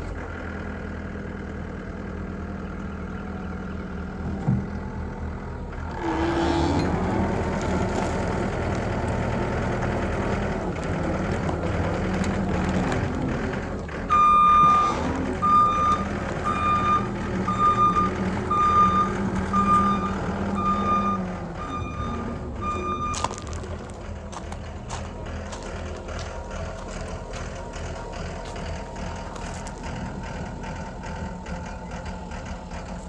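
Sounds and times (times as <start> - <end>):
diesel engine running: 0.0 - 33.0
backup alarm beeping: 14.1 - 23.9.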